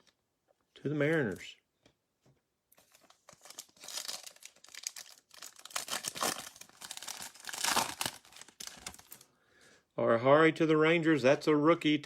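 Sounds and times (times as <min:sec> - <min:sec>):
foil wrapper tearing and crinkling: 0:02.8 - 0:09.2.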